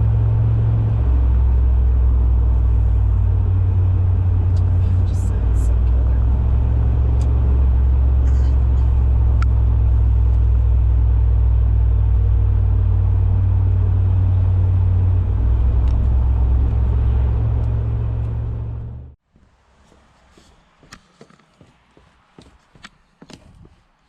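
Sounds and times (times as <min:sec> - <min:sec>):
car exhaust drone: 0:00.0 - 0:19.2.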